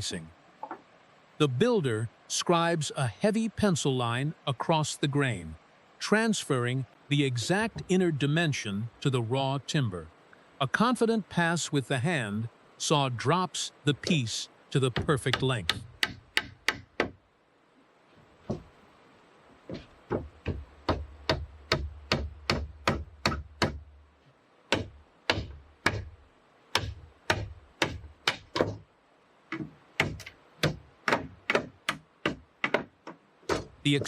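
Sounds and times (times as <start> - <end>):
hammering on timber: 14.9 - 17.2, 19.7 - 23.9, 24.7 - 28.8, 29.5 - 34.0.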